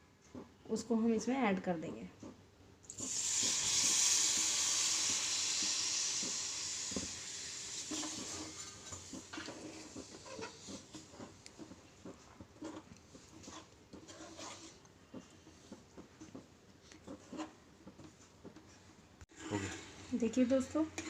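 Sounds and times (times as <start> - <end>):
liquid hissing in hot pan: 2.9 - 11.2.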